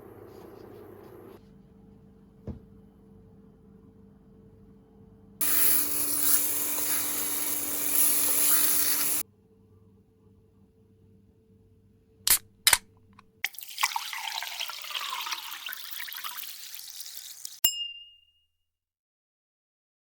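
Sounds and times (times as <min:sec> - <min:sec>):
tap water rushing into sink: 0:13.4 - 0:17.6.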